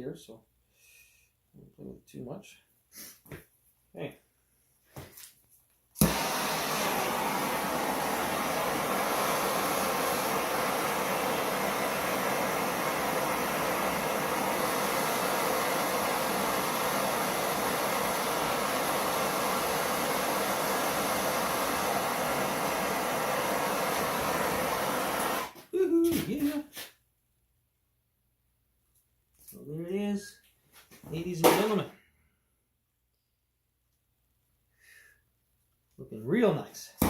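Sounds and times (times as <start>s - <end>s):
gas torch hissing: 6.0s - 25.6s.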